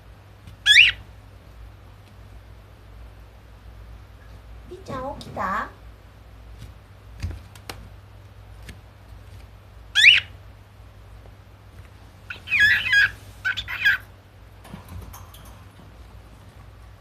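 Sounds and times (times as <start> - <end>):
cockatiel calling: 0.6 - 1.0, 9.9 - 10.4, 12.3 - 14.1.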